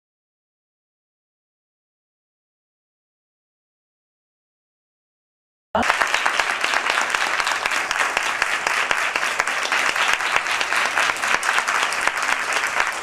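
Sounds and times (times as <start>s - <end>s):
crowd applauding: 5.8s - 13.0s.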